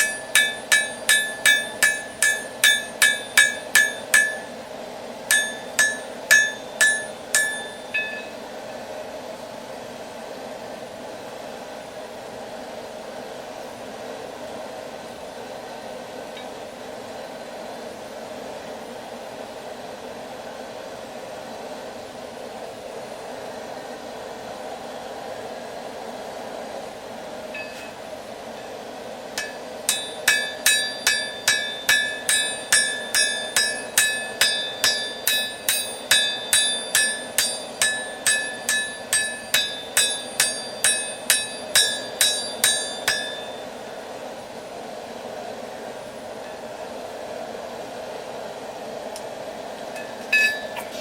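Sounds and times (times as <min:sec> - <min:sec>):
hammer striking metal on anvil: 0:00.0 - 0:04.6, 0:05.3 - 0:08.4, 0:29.4 - 0:43.6, 0:50.3 - 0:50.9.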